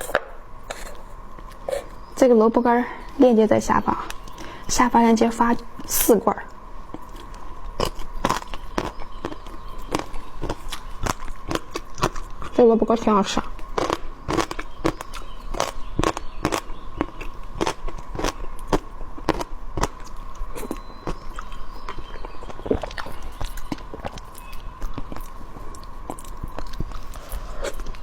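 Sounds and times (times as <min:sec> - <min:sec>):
crunchy chewing: 0:06.8 - 0:12.6, 0:13.4 - 0:28.0.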